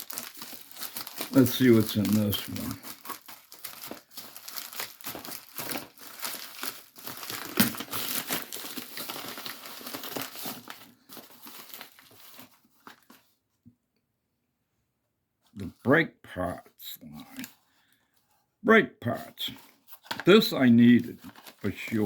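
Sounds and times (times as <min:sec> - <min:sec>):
packaging torn and crumpled: 0:00.0 - 0:13.3, 0:19.9 - 0:22.0.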